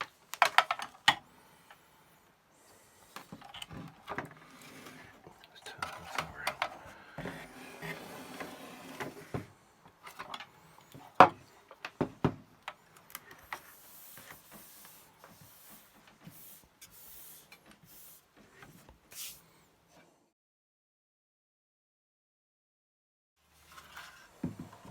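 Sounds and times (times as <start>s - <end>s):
printer parts clicking and knocking: 0.3s - 1.2s.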